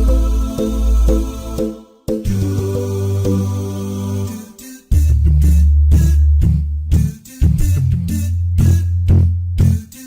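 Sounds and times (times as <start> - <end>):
background music with steady beat: 0.0 - 10.0.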